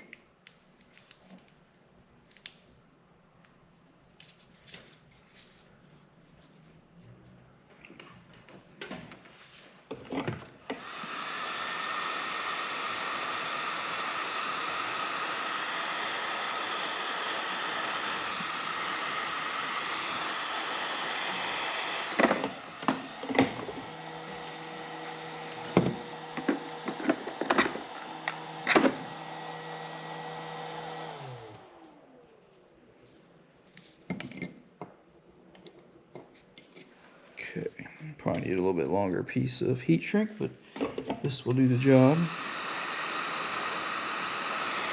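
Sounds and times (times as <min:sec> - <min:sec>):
heat gun blowing: 0:10.6 - 0:32.4, 0:40.9 - 0:44.9.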